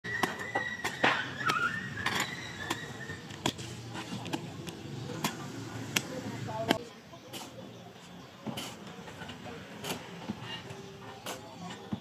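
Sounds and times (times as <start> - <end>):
thin high whistle-like tone: 0.0 - 3.2.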